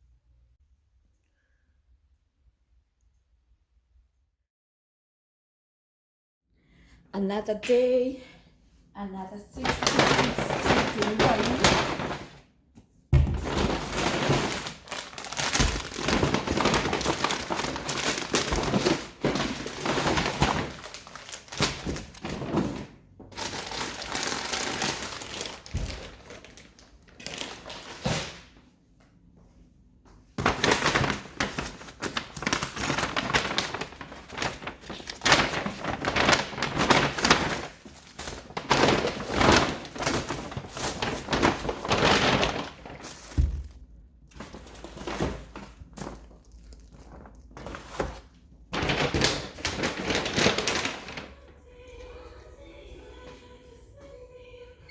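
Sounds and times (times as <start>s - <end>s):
crinkling and rustling: 9.4s - 29.2s, 30.1s - 52.4s
objects knocking and thudding: 9.7s - 23.5s.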